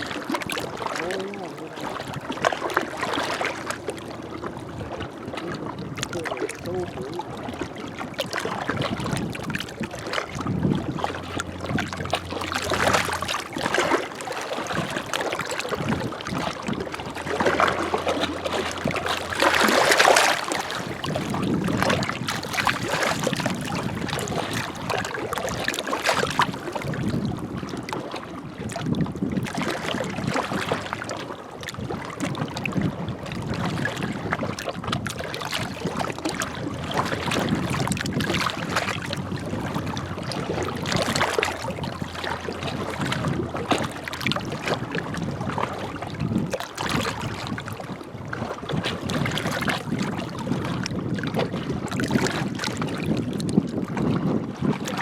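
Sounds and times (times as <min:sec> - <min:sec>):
larger wave splash: 0:00.0 - 0:27.0, 0:33.9 - 0:46.2
small waves lapping on shore: 0:00.0 - 0:55.0.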